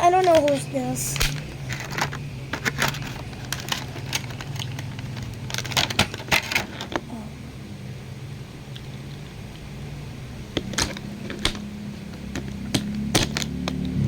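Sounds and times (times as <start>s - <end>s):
plastic toy parts clicking: 0.0s - 0.6s
steady low hum: 0.0s - 14.0s.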